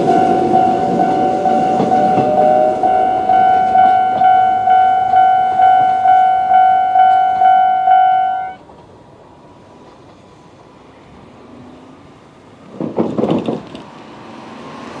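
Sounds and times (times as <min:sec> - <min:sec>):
vehicle passing: 0:00.0 - 0:08.4, 0:13.9 - 0:15.0
level crossing alarm ringing: 0:00.0 - 0:08.6.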